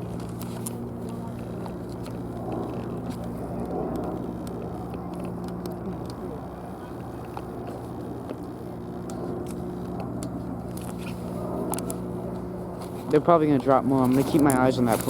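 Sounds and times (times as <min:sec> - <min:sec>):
low engine drone: 0:00.0 - 0:15.0.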